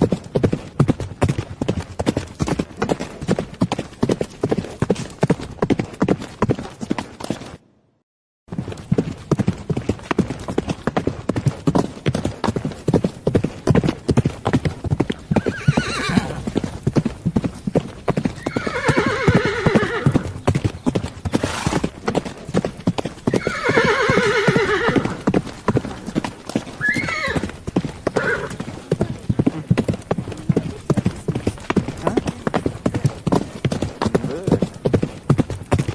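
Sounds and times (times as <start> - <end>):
horse hooves clip-clopping: 0.0 - 7.6, 8.5 - 35.9
horse whinnying: 14.7 - 20.4, 21.3 - 22.0, 23.3 - 28.8.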